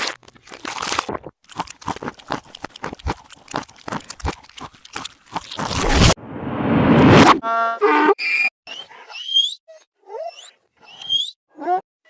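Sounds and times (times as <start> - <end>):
rapid crunching clicks: 0.0 - 6.1
reversed cartoon swelling noise: 5.8 - 7.4.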